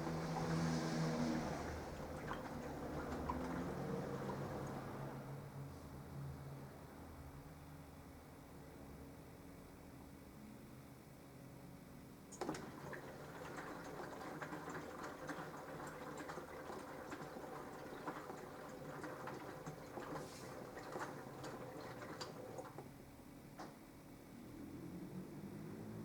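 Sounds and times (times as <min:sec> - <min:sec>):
water sloshing in washing machine: 0:00.0 - 0:05.4, 0:12.3 - 0:23.1.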